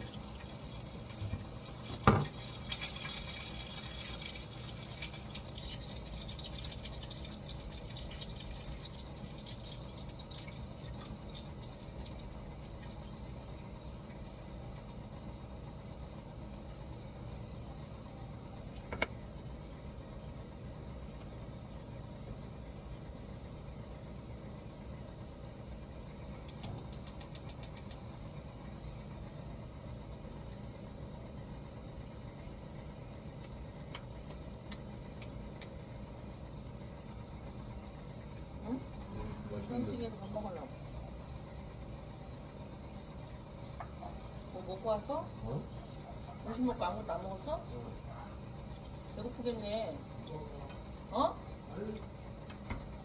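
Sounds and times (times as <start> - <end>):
water running: 0.0 - 15.0, 37.0 - 53.0
steady low hum: 0.0 - 53.0.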